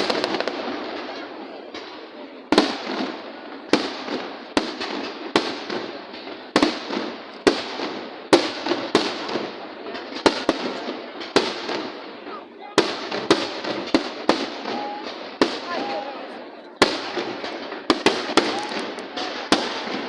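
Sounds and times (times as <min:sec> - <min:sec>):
fireworks crackling and rumbling: 0:00.0 - 0:20.0.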